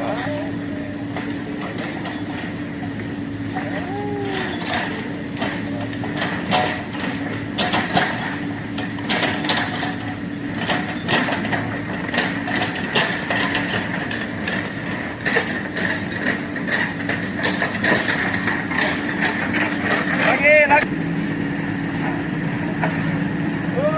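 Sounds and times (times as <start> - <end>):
backhoe loader engine running: 0.0 - 23.9
metal clanks and rattles: 4.3 - 20.7.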